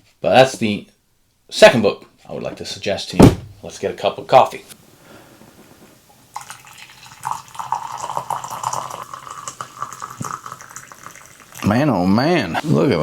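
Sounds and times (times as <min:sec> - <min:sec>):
coffee pouring into a cup: 0:06.3 - 0:11.8.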